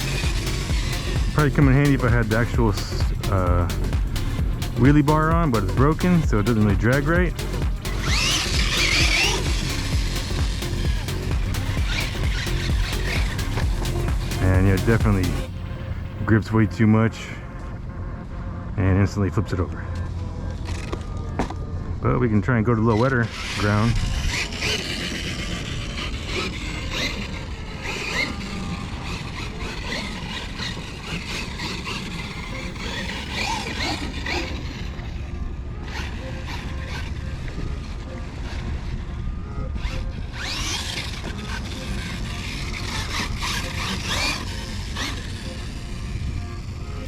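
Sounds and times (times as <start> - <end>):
electric motor whining: 0.0 - 18.7, 19.6 - 47.0
low rushing noise: 0.0 - 22.8.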